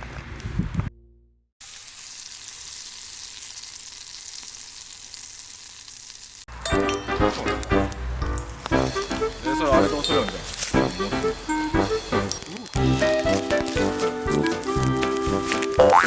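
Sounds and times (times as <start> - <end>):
meat sizzling in a frying pan: 1.6 - 6.5, 7.2 - 16.0
background music: 6.6 - 16.0.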